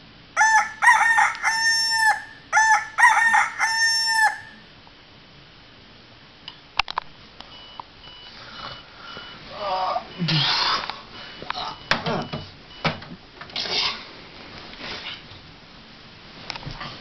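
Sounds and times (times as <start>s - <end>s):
rooster crowing: 0.4s - 4.7s.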